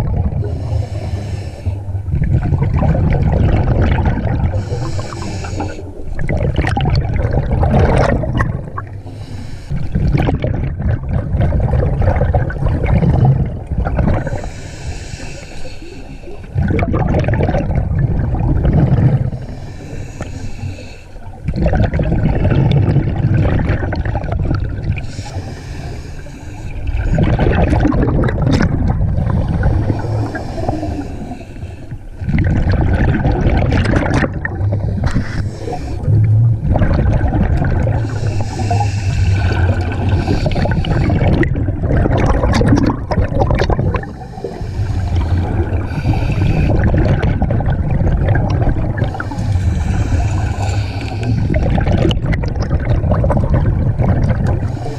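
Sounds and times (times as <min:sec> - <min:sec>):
diver breathing through regulator: 0:00.3 - 0:02.1, 0:04.5 - 0:06.2, 0:08.9 - 0:10.2, 0:14.2 - 0:16.6, 0:19.1 - 0:21.4, 0:24.9 - 0:27.4, 0:29.1 - 0:32.2, 0:34.2 - 0:41.5, 0:42.8 - 0:47.4, 0:48.7 - 0:51.9, 0:53.4 - 0:54.9
air bubbling underwater: 0:02.0 - 0:05.2, 0:06.1 - 0:09.0, 0:09.9 - 0:14.4, 0:16.6 - 0:19.4, 0:21.4 - 0:25.2, 0:26.8 - 0:31.0, 0:32.2 - 0:54.8.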